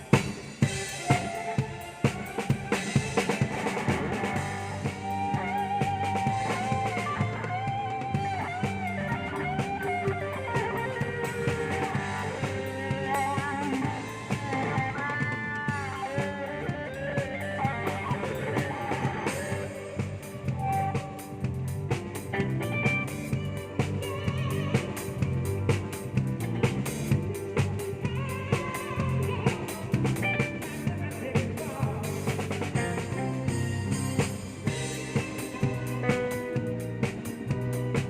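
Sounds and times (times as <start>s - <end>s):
drum kit beat: 0.0s - 38.0s
guitar melody with bent notes: 0.0s - 38.0s.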